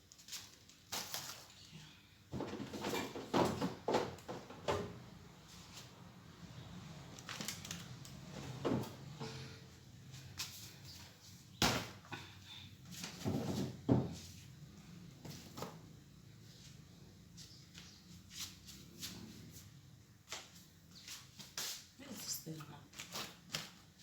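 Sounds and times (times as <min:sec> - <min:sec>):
items being handled and set down: 0:02.3 - 0:05.9, 0:07.2 - 0:09.5, 0:12.9 - 0:14.5.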